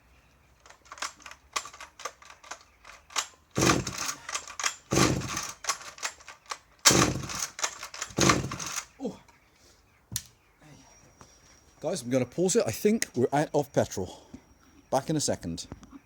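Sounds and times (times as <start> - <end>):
chainsaw starter cord pulls: 0.6 - 8.9
recoil starter clicking: 0.6 - 8.9.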